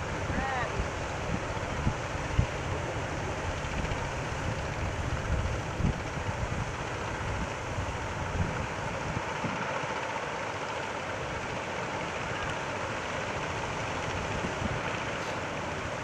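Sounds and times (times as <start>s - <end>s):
wind buffeting microphone: 0.0s - 9.6s
sea surf rushing: 0.0s - 16.0s.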